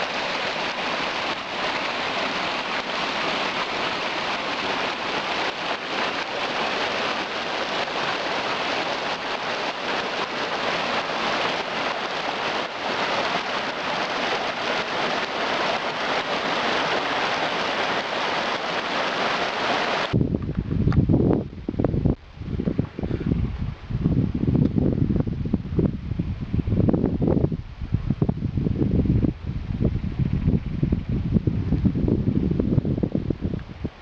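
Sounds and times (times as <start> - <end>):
water rushing in stream: 0.0 - 20.7.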